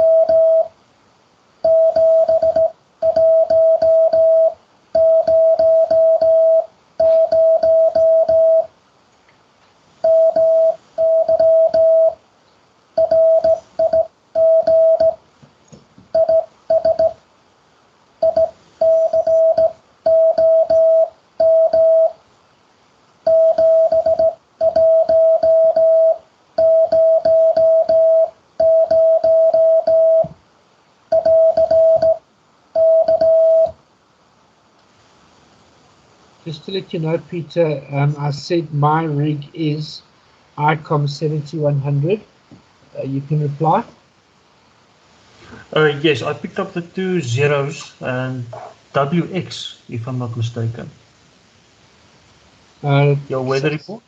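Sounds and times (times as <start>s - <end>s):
morse code tone: 0.0s - 0.7s, 1.6s - 8.7s, 10.0s - 12.2s, 13.0s - 15.2s, 16.1s - 17.2s, 18.2s - 22.2s, 23.3s - 30.4s, 31.1s - 32.2s, 32.8s - 33.8s.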